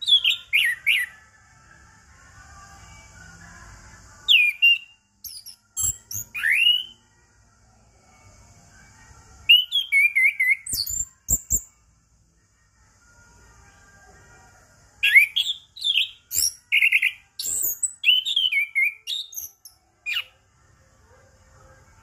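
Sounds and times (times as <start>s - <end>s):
thrush singing whistled phrases: 0.0s - 1.2s, 4.2s - 7.0s, 9.5s - 11.7s, 15.0s - 20.3s.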